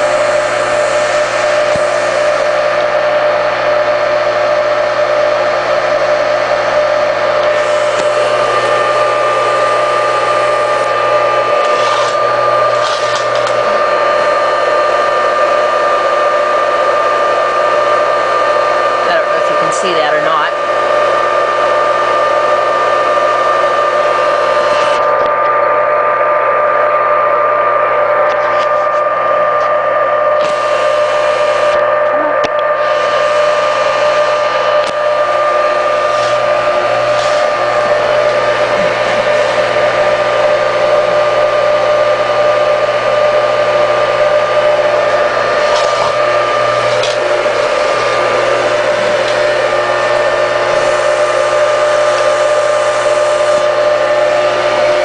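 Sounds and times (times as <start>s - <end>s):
electric motor humming and whining: 0.0s - 55.0s.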